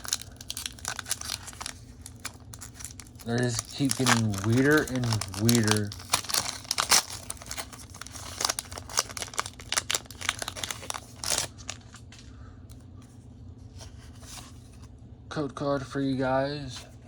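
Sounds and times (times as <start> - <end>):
foil wrapper crinkling and tearing: 0.0 - 12.2.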